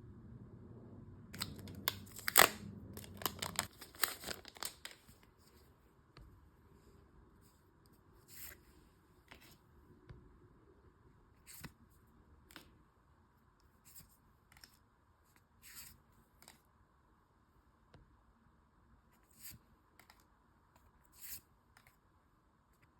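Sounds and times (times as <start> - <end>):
packaging and cards handled: 1.4 - 5.6.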